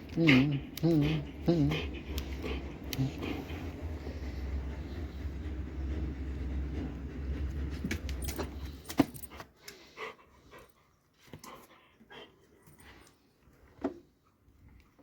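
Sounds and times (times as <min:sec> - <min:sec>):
dog sounds: 0:00.0 - 0:04.0
low steady rumble: 0:00.0 - 0:09.3
clicks and jingles: 0:07.7 - 0:09.8.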